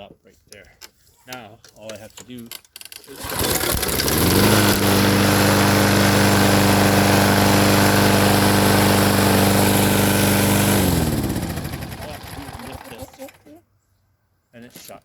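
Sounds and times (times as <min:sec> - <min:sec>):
lawnmower engine running: 0:03.0 - 0:13.4
engine spinning down: 0:03.2 - 0:13.4.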